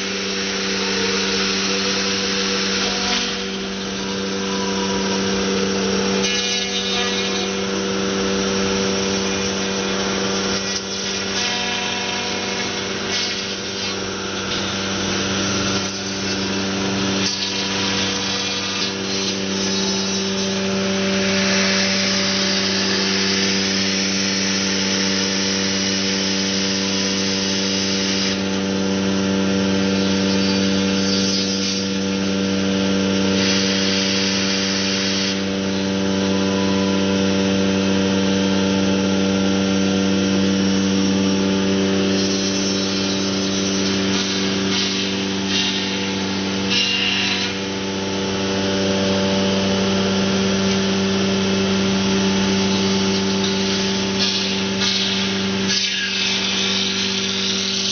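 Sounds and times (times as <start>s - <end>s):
machine motor hum: 0.0s - 27.7s
cutting tool hiss: 33.2s - 37.0s, 42.1s - 47.6s, 52.3s - 57.9s.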